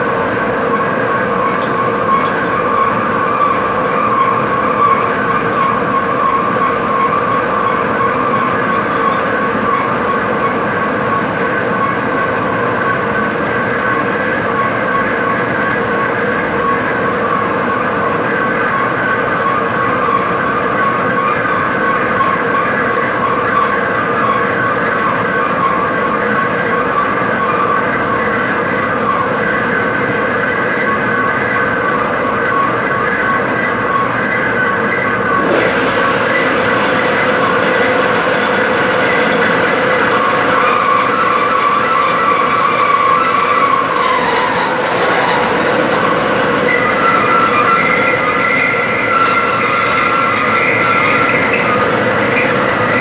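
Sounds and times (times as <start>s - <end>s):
machine tool running: 35.3s - 53.0s.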